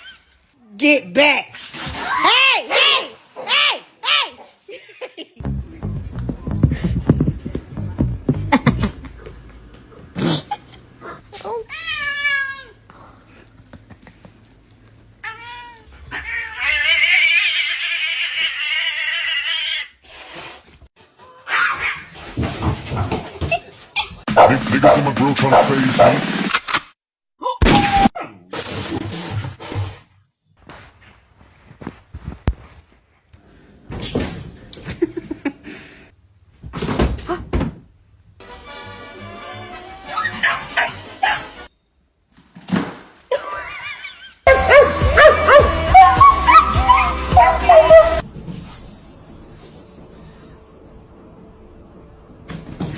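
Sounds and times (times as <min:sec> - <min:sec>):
cat meowing and yowling: 0:15.2 - 0:19.9, 0:44.5 - 0:48.2
scuffling noise: 0:30.6 - 0:33.3.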